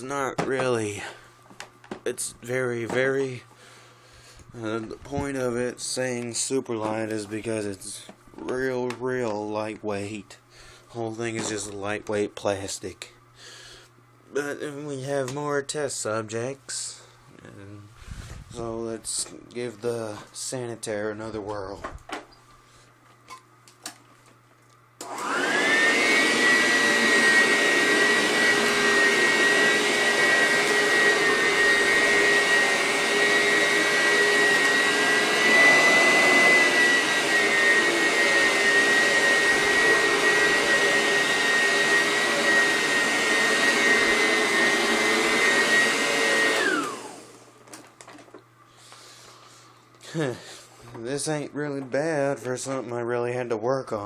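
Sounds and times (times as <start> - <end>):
vacuum cleaner motor whining: 25.0 - 48.3.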